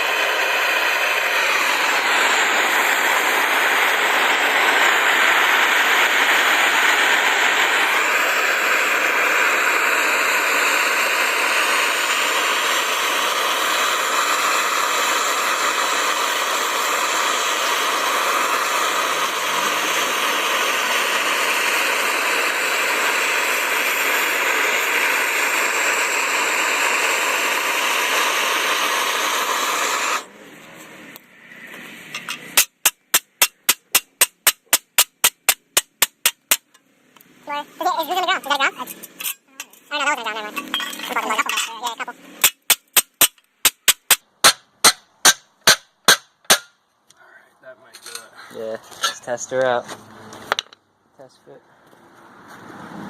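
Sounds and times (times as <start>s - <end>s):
angle grinder grinding steel: 0.0s - 30.3s, 37.7s - 43.4s.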